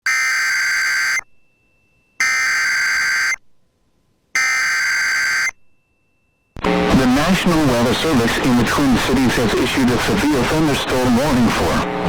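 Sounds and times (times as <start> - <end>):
digital data tone bursts: 2.2 - 3.4.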